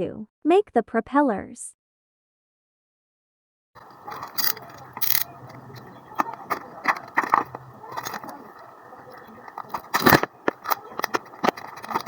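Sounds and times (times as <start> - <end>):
faint steady hum: 3.8 - 12.0.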